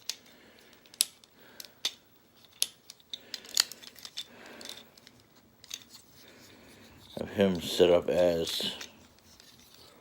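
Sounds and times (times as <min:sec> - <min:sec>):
plastic toy parts clicking: 0:00.0 - 0:06.0.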